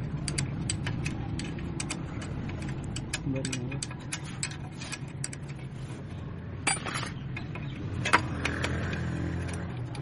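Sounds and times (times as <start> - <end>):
sharp metallic clicks: 0.0 - 5.6
motorcycle engine humming: 5.1 - 10.0.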